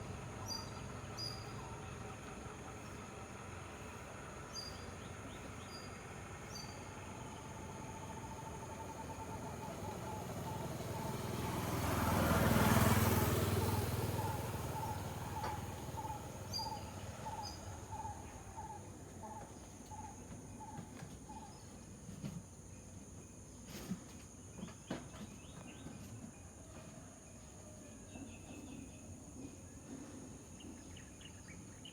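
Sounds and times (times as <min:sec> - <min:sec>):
vehicle passing: 0:00.0 - 0:18.8
high insect hum: 0:00.0 - 0:23.7
repeated bird call: 0:14.2 - 0:19.4
bird chirps: 0:14.2 - 0:21.7.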